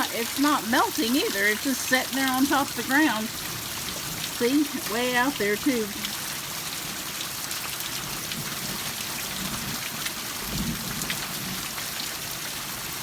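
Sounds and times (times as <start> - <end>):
hailstones ticking: 0.0 - 6.4
heavy rain pouring: 0.0 - 13.0.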